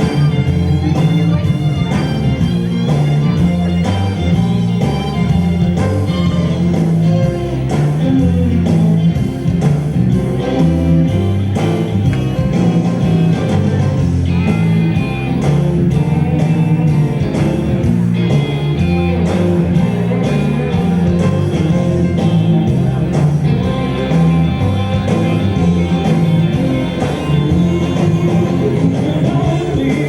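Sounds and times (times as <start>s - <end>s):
blues song with electric guitar: 0.0s - 30.0s
person singing: 4.1s - 9.6s, 12.5s - 17.6s, 18.6s - 30.0s.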